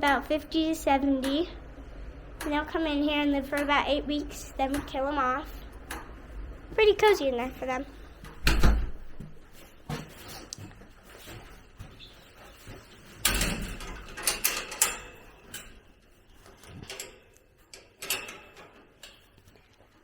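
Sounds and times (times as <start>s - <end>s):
door knocks and rattles: 8.3s - 9.4s.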